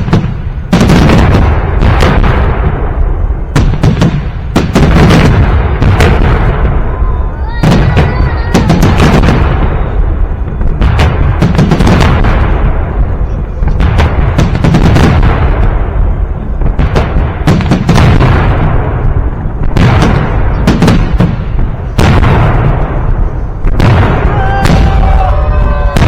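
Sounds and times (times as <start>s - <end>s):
fireworks booming: 0.0s - 26.0s.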